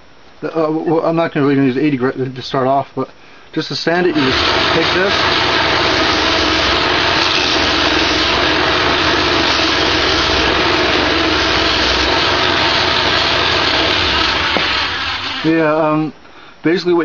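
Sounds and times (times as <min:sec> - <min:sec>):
lathe motor low hum: 0:04.1 - 0:15.6
sandpaper hissing on spinning wood: 0:04.1 - 0:15.9.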